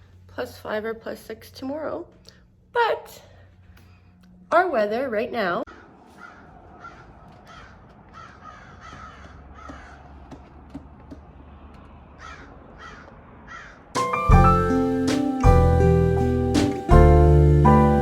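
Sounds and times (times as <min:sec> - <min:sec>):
crows cawing: 0:05.7 - 0:10.5, 0:12.2 - 0:14.0
music: 0:14.0 - 0:18.0.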